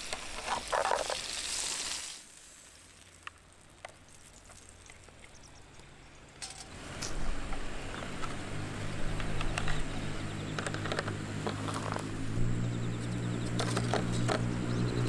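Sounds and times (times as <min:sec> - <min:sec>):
wood fire crackling and sizzling: 0:00.0 - 0:09.1
steady low hum: 0:06.4 - 0:15.0.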